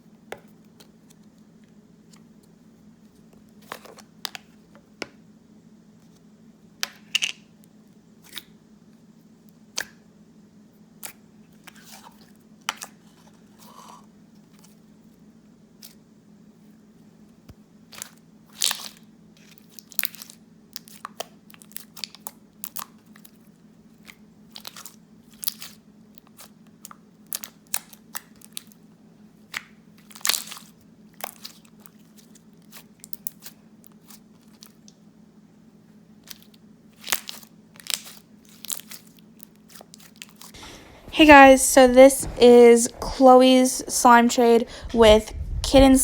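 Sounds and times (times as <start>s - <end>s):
faint steady hum: 40.3s - 46.0s.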